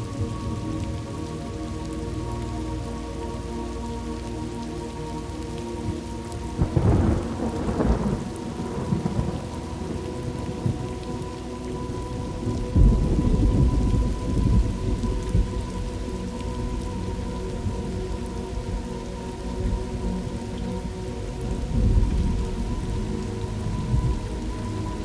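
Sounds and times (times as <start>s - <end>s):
steady rain falling: 0.0s - 25.0s
thunder rolling: 6.6s - 9.6s, 12.4s - 15.6s.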